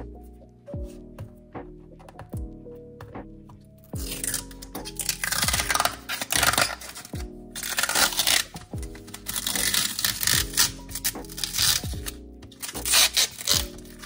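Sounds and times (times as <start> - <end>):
lo-fi music with steady beat: 0.0 - 14.0
packaging rustling and crinkling: 4.0 - 14.0.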